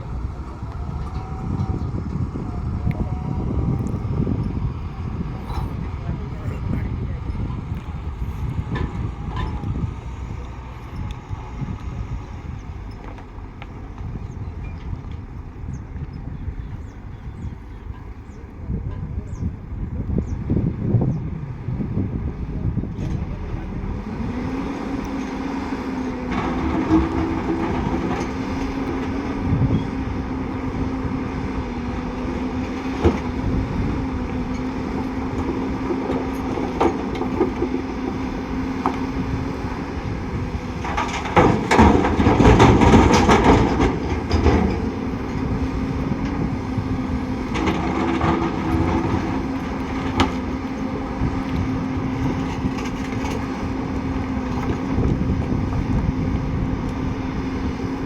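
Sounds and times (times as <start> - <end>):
heavy diesel machinery running: 0.0 - 58.0
metallic clanks and knocks: 8.7 - 11.1, 16.8 - 19.1, 40.8 - 46.5.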